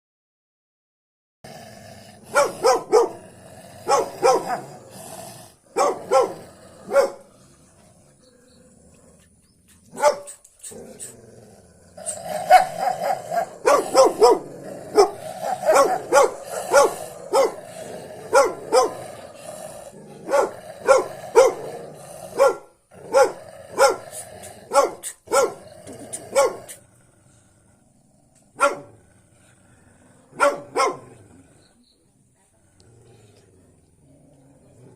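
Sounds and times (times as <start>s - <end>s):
dog barking: 2.3s - 3.2s, 3.8s - 4.8s, 5.8s - 7.2s, 10.0s - 10.4s, 12.4s - 17.6s, 18.3s - 19.0s, 20.2s - 21.6s, 22.3s - 24.0s, 24.7s - 25.6s, 26.3s - 26.7s, 28.6s - 28.9s, 30.4s - 31.1s.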